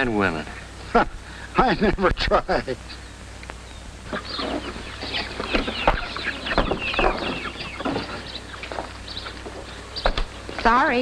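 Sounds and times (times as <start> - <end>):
chickens clucking: 4.0 - 10.8.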